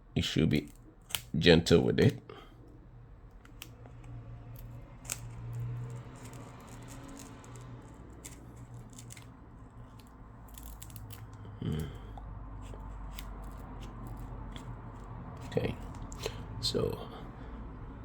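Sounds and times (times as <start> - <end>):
pry tool clicks and crackles: 0.5 - 1.4, 3.3 - 11.4.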